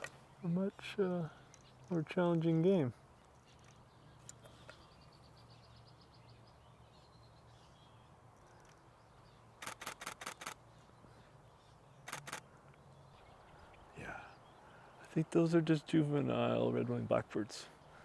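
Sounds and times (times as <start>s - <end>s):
faint bird calls: 0.0s - 15.1s
camera shutter clicks: 9.6s - 10.6s, 12.1s - 12.4s.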